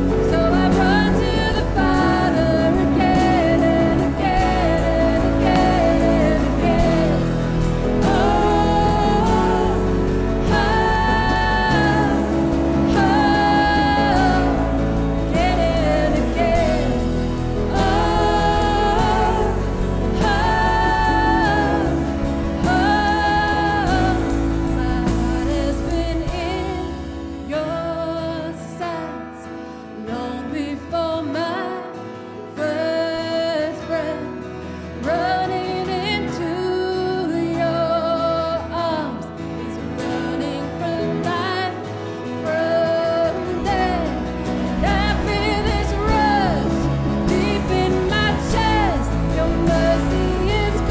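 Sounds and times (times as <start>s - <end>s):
worship band playing: 0.0s - 27.8s, 37.6s - 50.9s
people singing: 0.0s - 29.2s, 35.0s - 50.9s.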